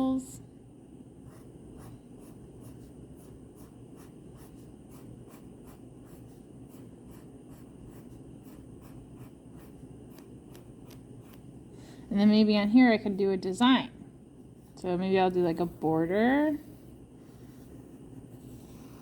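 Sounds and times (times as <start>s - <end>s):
pencil scratching on paper: 1.2s - 11.4s, 15.4s - 19.0s.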